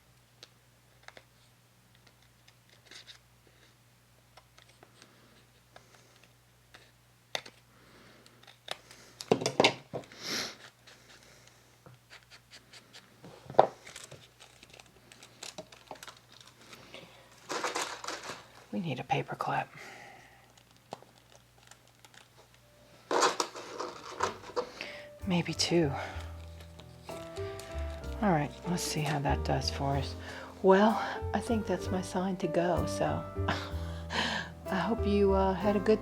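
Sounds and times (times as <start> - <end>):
paper crinkling: 0.9 - 7.7, 10.5 - 18.8, 20.2 - 25.2, 26.0 - 29.4
paper rustling and sliding: 10.5 - 18.7, 20.6 - 25.0, 26.2 - 29.2.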